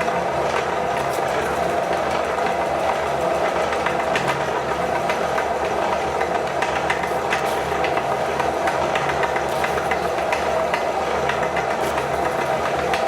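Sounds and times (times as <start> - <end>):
electric meat grinder humming: 0.0 - 13.0.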